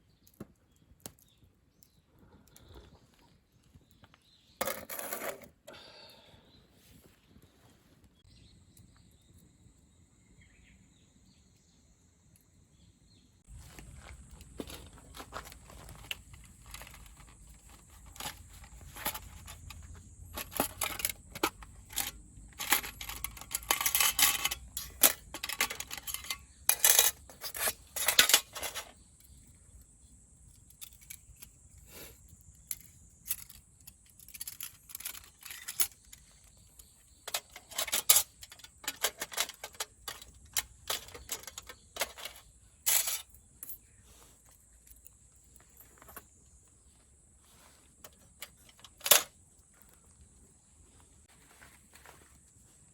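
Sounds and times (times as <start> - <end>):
small metal items clinking: 4.5 - 5.6, 13.5 - 29.4, 30.5 - 46.4, 48.0 - 49.4.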